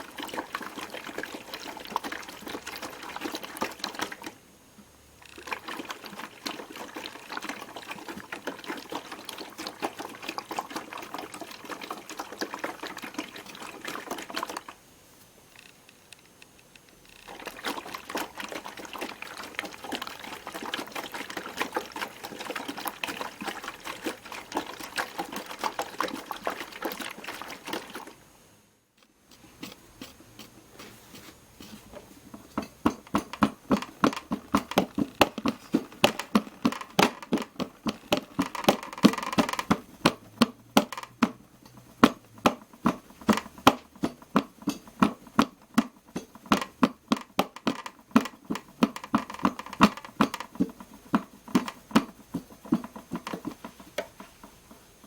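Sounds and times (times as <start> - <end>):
water swishing and draining: 5.2 - 14.8, 17.3 - 28.2, 32.9 - 42.3.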